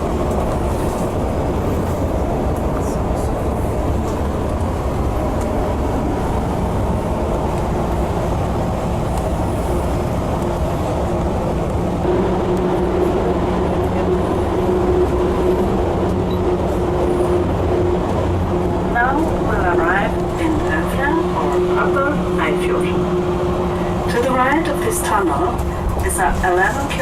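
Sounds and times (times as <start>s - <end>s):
bus engine and tyres rumbling: 0.0s - 27.0s.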